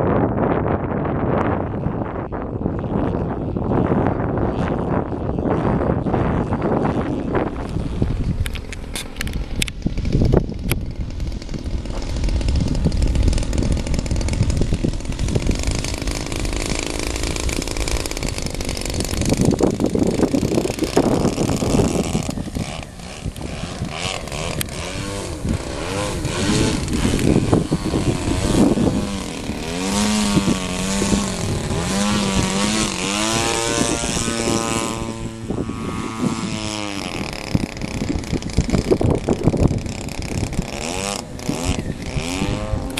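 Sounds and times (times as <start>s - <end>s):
wind buffeting microphone: 0.0s - 42.9s
model plane engine revving: 2.1s - 42.9s.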